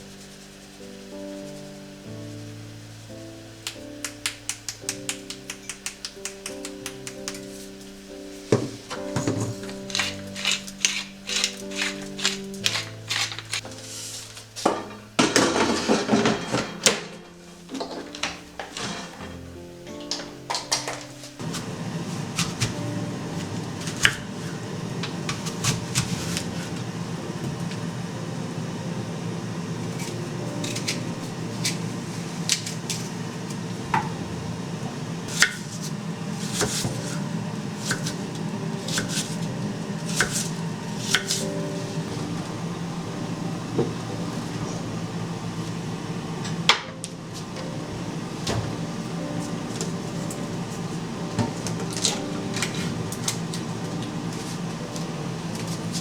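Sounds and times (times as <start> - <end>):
dishes and cutlery clinking: 8.5 - 21.2.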